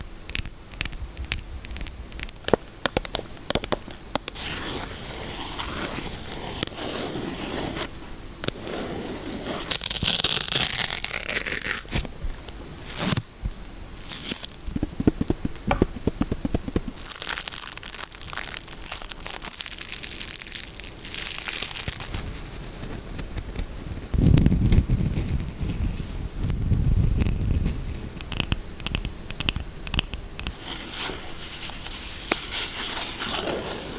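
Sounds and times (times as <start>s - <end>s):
wrapper crinkling and tearing: 9.6s - 13.2s, 14.0s - 15.1s, 17.0s - 28.2s.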